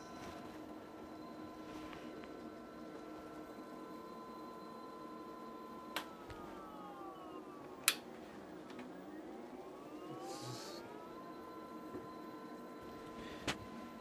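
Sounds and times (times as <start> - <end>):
electric scooter motor whining: 3.7 - 14.0.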